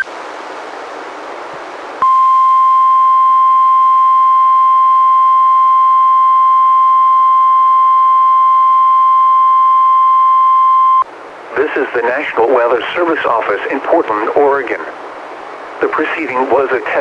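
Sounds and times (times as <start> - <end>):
steady high alarm tone: 2.0 - 11.0
radio hiss: 10.0 - 17.0.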